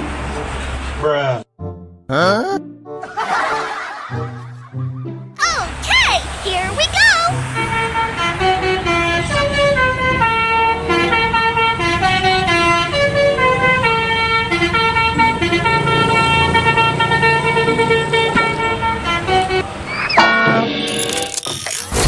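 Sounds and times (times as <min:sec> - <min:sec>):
low vehicle rumble: 0:05.0 - 0:20.2
multi-note bus air horn tune: 0:07.3 - 0:20.7.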